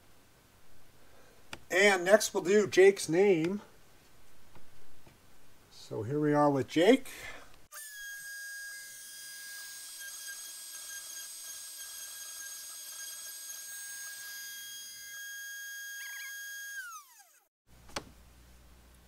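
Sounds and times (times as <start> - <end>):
router spindle high-pitched whine: 7.8 - 17.4.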